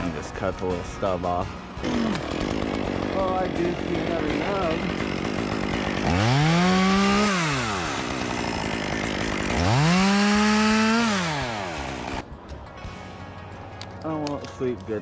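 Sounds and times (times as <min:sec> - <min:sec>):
chainsaw revving: 0:01.8 - 0:12.2.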